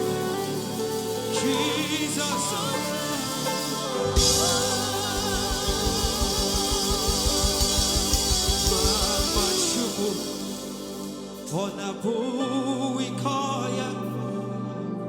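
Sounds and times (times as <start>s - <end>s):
fast drum beat: 0.0s - 11.6s
person singing with vibrato: 0.0s - 15.0s
sustained instrumental backing: 0.0s - 15.0s.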